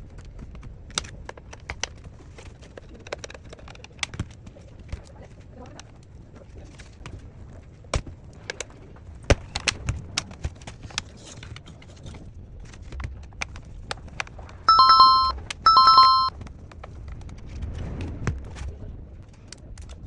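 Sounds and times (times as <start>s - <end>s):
two-note electronic beeps: 14.7s - 16.3s.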